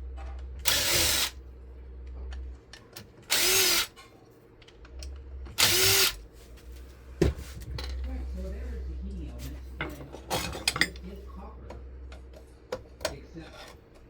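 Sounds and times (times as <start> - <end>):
power drill short bursts: 0.7 - 1.3, 3.3 - 3.9, 5.6 - 6.2.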